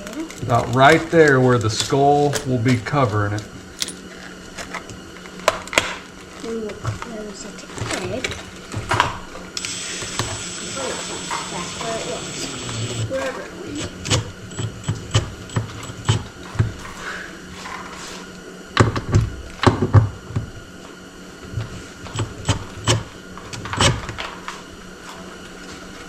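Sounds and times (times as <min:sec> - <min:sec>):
tools knocking on wooden board: 0:14.0 - 0:16.8.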